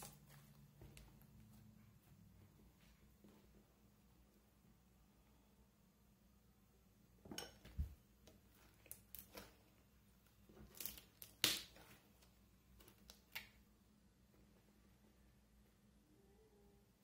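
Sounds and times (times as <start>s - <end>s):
slime squishing with pops: 10.5s - 13.6s.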